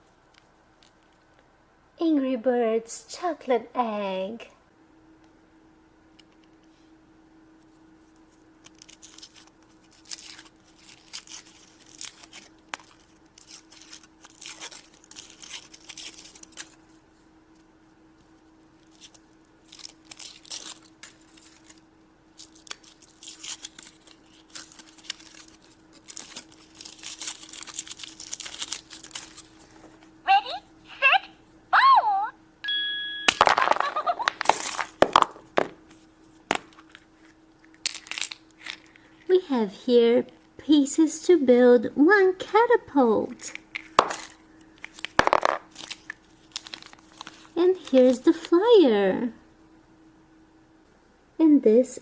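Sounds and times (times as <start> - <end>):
faint steady hum: 0.0 - 52.0
wrapper crinkling and tearing: 8.5 - 16.9, 18.6 - 29.8, 33.5 - 35.3, 36.7 - 39.3, 43.5 - 48.5.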